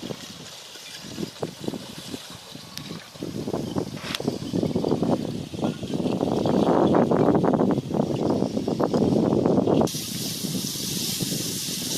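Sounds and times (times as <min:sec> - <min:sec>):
steady hiss: 0:09.9 - 0:11.9.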